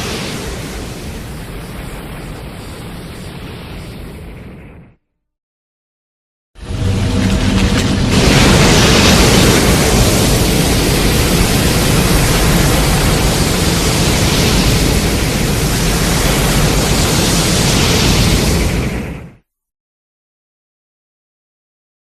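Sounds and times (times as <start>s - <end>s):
loud steady rushing noise: 0.0s - 4.8s, 6.6s - 19.3s
deep rumble: 6.6s - 19.2s.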